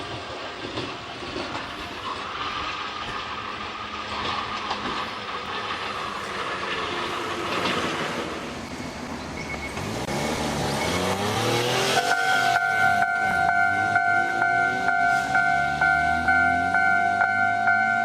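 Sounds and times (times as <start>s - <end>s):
train wheels clattering over rail joints: 0.0s - 10.1s.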